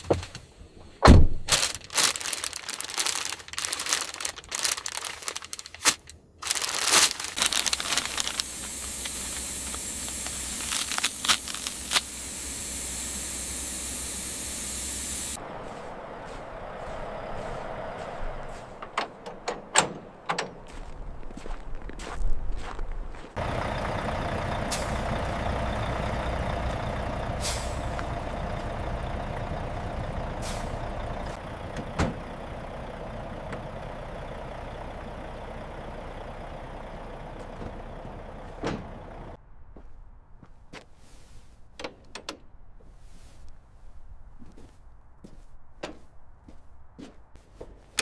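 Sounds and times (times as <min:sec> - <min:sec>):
truck engine rumbling: 0:00.0 - 0:22.0, 0:23.3 - 0:39.4.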